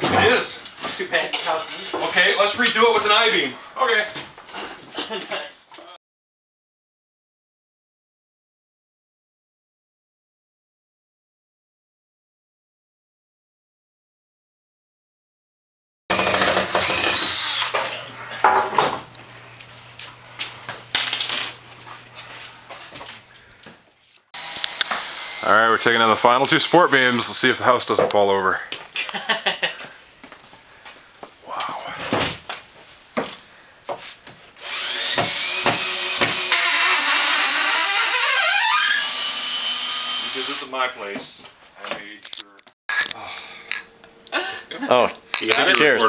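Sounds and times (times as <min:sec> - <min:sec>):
power tool running: 0:16.1 - 0:18.5, 0:24.4 - 0:27.1, 0:34.6 - 0:40.7.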